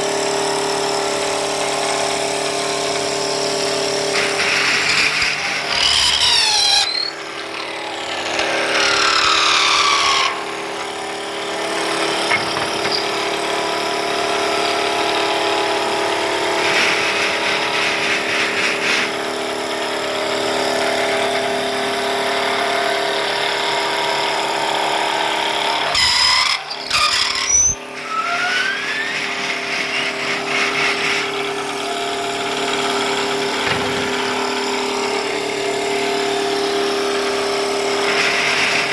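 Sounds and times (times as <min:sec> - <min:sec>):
machine motor hum with whines: 0:00.0 - 0:17.7.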